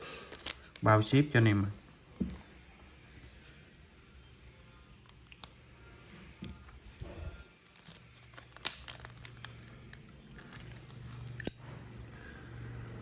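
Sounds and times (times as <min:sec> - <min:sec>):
metal lighters clicking and clinking: 0:11.4 - 0:11.8.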